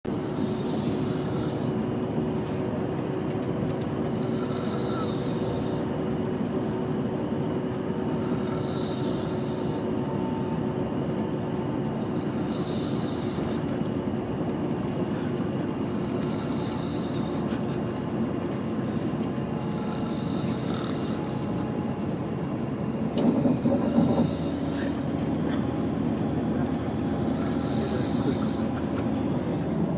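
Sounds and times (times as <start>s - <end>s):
bus engine drone: 0.0s - 29.9s
woman snoring: 0.1s - 1.7s, 4.2s - 5.9s, 8.1s - 9.8s, 12.0s - 13.6s, 15.8s - 17.5s, 19.6s - 21.3s, 23.3s - 25.0s, 27.0s - 28.7s.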